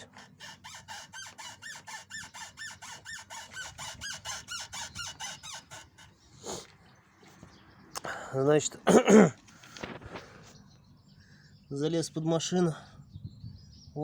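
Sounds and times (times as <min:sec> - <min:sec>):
car suspension squeaking: 0:00.0 - 0:06.8.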